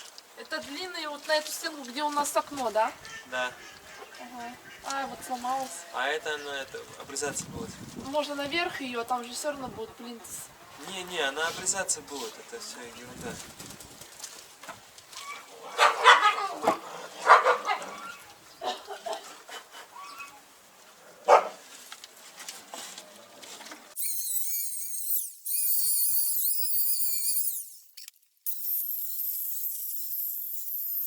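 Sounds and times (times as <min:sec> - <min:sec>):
dog barking and yipping: 0:15.4 - 0:18.2, 0:21.3 - 0:21.6
high wavering pitched sound: 0:24.0 - 0:31.0.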